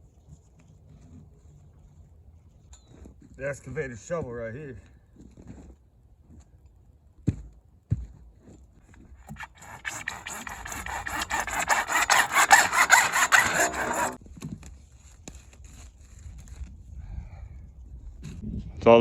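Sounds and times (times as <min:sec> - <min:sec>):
gravel being scraped: 0:09.3 - 0:14.2.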